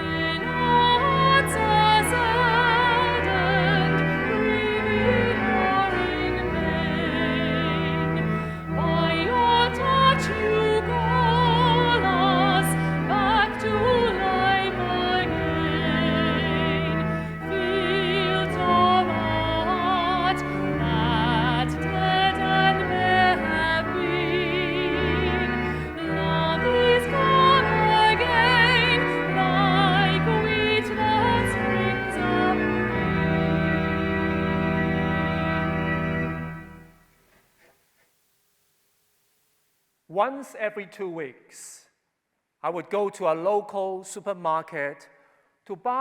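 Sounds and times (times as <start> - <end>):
classical singing with vibrato: 0.0 - 36.6
organ accompaniment: 0.0 - 37.1.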